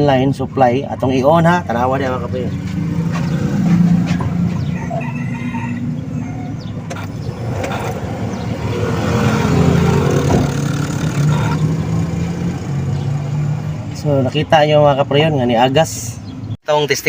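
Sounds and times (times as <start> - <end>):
engine humming: 0.7 - 16.6
rough noisy rattle: 6.9 - 11.6.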